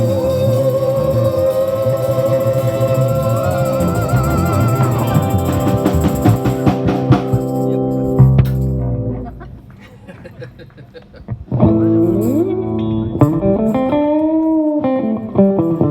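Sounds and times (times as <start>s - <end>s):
rock music with wavering lead: 3.4s - 9.4s, 11.6s - 15.9s
drum hits: 4.4s - 8.8s.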